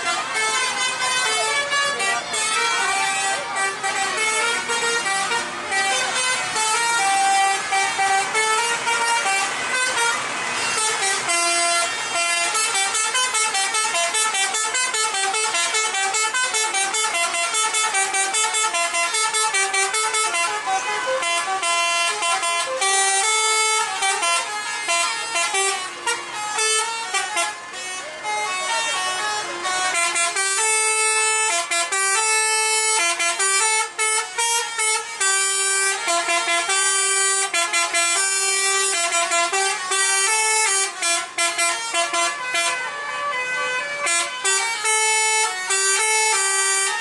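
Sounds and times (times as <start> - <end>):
multi-tone bus horns: 0.0 - 47.0.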